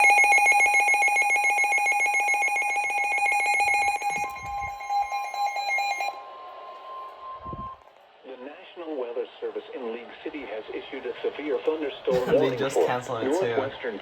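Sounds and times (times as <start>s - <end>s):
trilling electronic alert: 0.0s - 6.5s
steady warning alarm tone: 0.0s - 7.8s.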